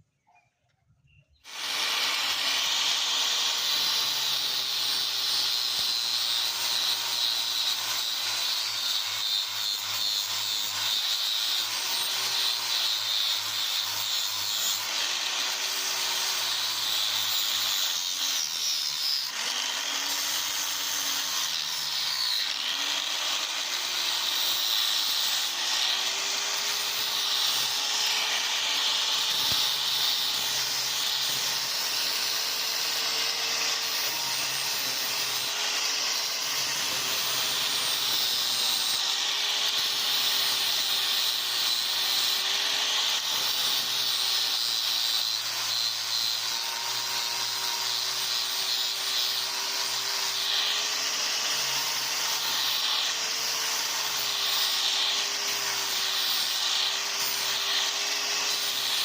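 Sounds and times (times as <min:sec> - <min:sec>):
power tool motor hissing: 0:01.5 - 0:59.0.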